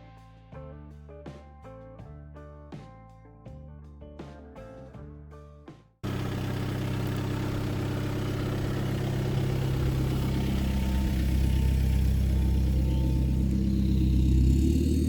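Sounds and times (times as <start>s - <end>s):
car engine running: 6.0s - 15.0s.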